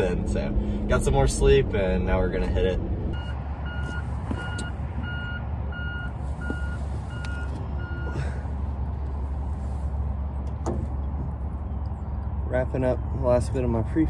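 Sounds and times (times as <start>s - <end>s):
steady low rumble: 0.0s - 14.0s
reversing alarm beeping: 3.2s - 8.3s.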